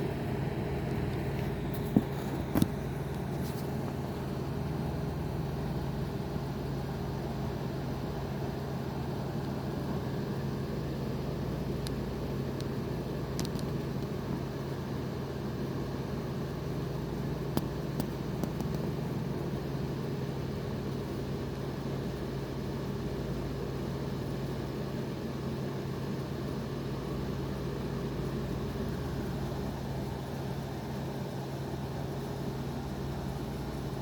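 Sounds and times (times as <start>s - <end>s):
low mechanical hum: 0.0s - 34.0s
small clicks: 13.3s - 14.1s.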